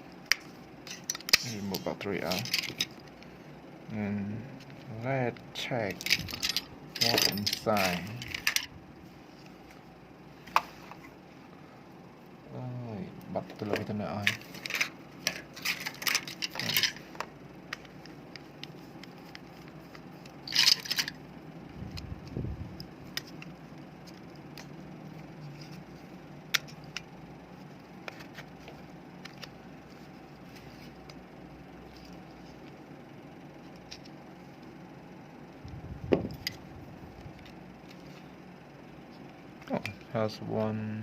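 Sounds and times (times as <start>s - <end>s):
faint steady hum: 0.0s - 41.0s.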